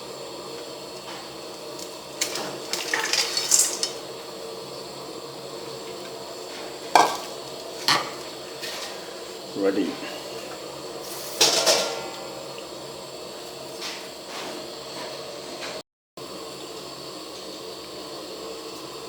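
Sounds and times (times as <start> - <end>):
pots and utensils clattering: 2.2 - 4.0, 7.0 - 9.0, 11.2 - 12.3.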